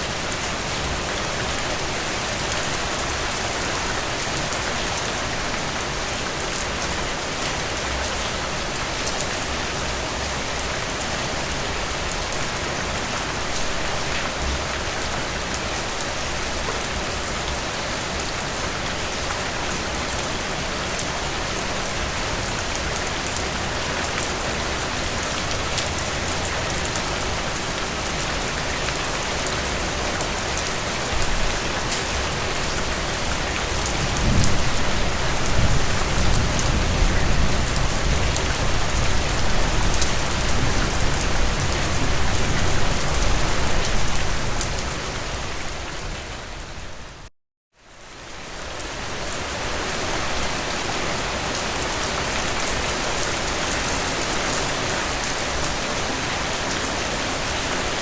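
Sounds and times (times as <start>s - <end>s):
heavy rain spattering: 10.1s - 45.3s.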